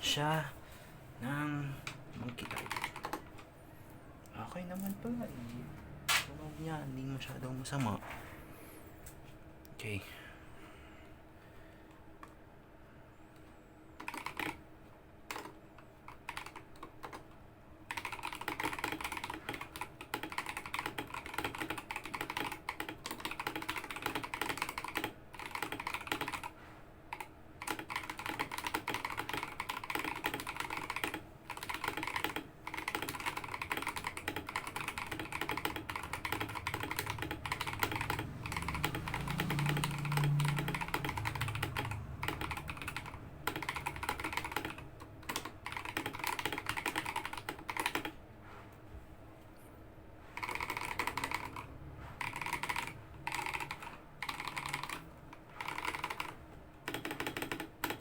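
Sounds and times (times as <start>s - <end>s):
mechanical keyboard typing: 1.8s - 3.4s, 14.0s - 14.7s, 15.3s - 48.2s, 50.2s - 58.0s.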